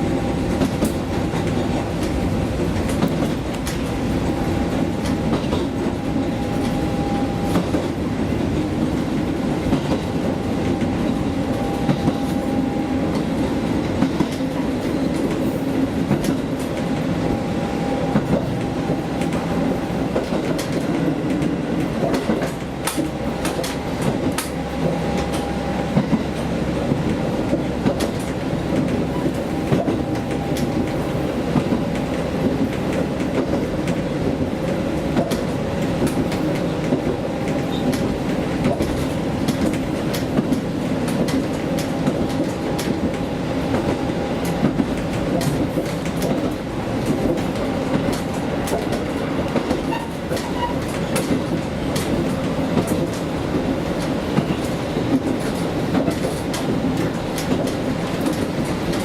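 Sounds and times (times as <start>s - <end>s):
diesel railcar engine drone: 0.0s - 59.0s
wheels clicking over rail joints: 20.1s - 59.0s.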